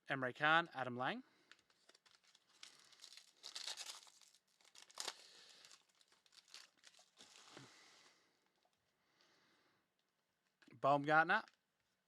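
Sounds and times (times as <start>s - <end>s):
foil wrapper tearing and crinkling: 1.6s - 7.6s.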